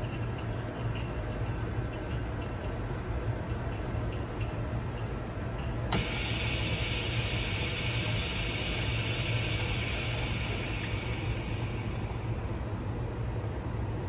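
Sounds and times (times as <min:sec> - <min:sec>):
machine humming: 0:00.0 - 0:12.8
air hissing: 0:05.9 - 0:12.8.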